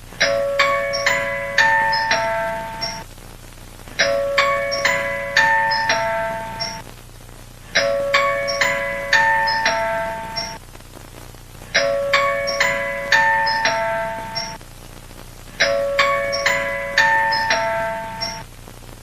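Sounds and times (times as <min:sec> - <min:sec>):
bell-like alert chime: 0:00.2 - 0:03.0, 0:04.0 - 0:06.8, 0:07.8 - 0:10.6, 0:11.8 - 0:14.6, 0:15.6 - 0:18.4.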